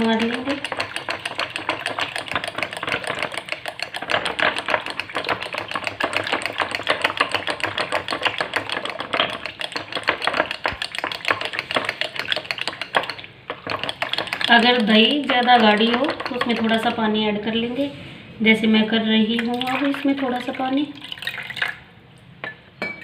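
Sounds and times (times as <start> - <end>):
utensil clicking against bowl: 0.0 - 17.0.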